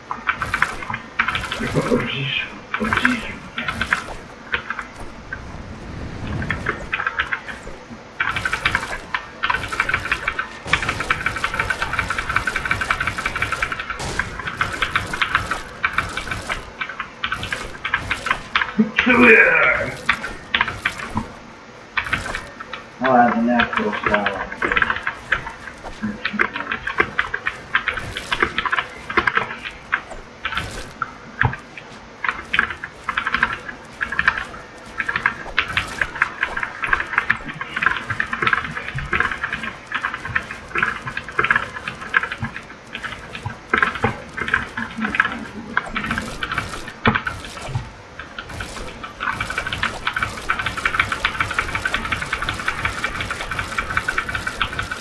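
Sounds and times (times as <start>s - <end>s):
computer keyboard typing: 0.2s - 5.1s, 6.4s - 21.4s, 23.6s - 55.0s
typing on a keyboard: 32.3s - 55.0s.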